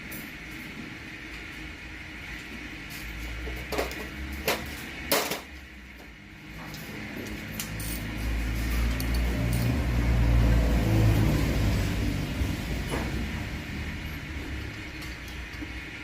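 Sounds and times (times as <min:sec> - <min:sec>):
low engine rumble: 0:05.6 - 0:16.0.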